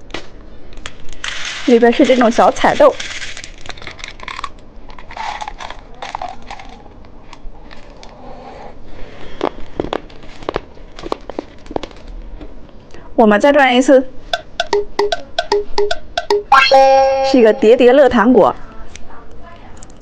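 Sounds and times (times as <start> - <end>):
plastic packaging crinkling: 1.0 - 7.0.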